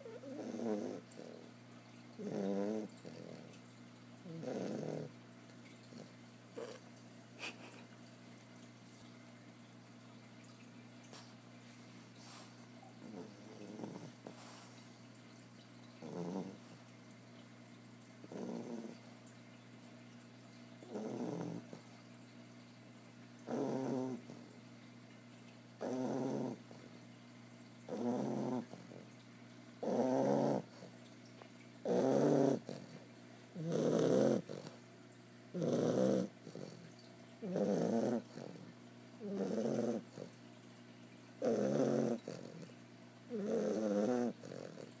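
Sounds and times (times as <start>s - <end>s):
puppy snoring: 0.0s - 3.6s, 4.2s - 6.8s, 12.2s - 14.8s, 16.0s - 16.8s, 18.2s - 19.0s, 20.8s - 21.9s, 23.4s - 24.6s, 25.8s - 27.0s, 27.9s - 29.2s, 29.8s - 30.9s, 31.8s - 34.8s, 35.5s - 40.4s, 41.4s - 45.0s.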